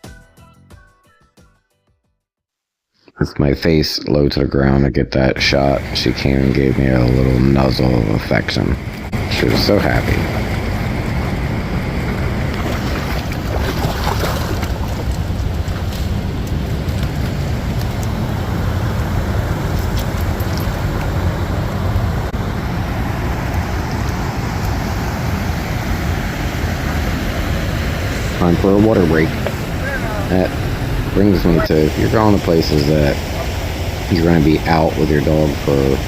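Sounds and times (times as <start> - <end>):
waterfall rushing: 20.4 - 36.0.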